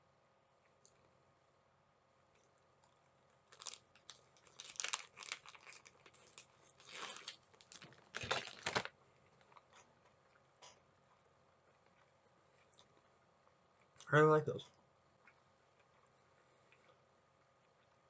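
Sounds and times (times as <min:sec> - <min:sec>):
plastic packaging crinkling and tearing: 0:03.4 - 0:09.7.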